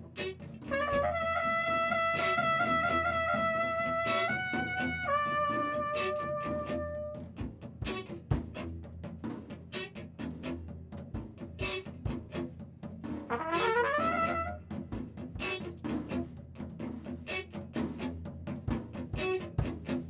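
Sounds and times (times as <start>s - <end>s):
steady drum beat: 0.0s - 20.0s
brass music: 0.6s - 7.3s, 13.3s - 15.5s.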